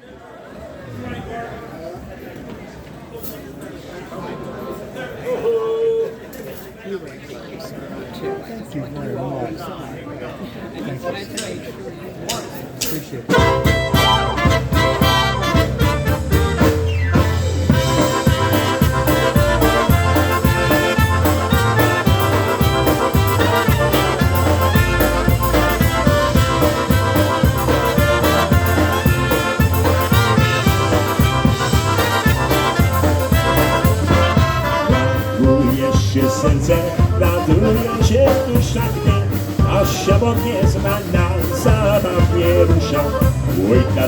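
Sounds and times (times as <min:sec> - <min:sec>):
polka band playing: 0:13.2 - 0:44.0
brass: 0:13.3 - 0:44.0
steady bass: 0:13.4 - 0:44.0.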